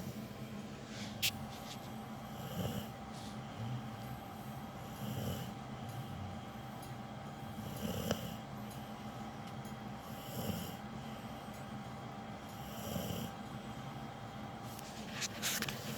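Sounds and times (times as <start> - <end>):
dog snoring: 1.8 - 6.8, 7.4 - 8.5, 10.0 - 11.3, 12.4 - 13.4.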